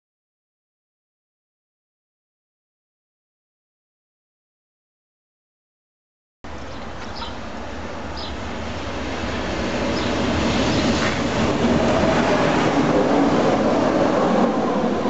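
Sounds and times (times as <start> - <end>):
train passing: 6.5 - 15.0.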